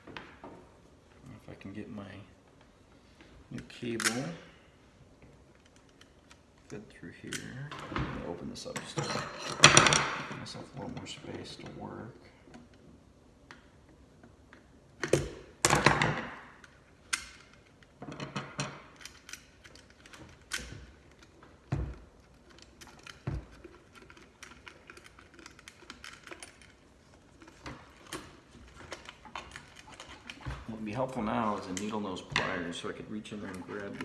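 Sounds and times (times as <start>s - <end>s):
clicks and knocks of tools: 13.5s - 30.8s
small metal parts rattling: 15.7s - 34.0s.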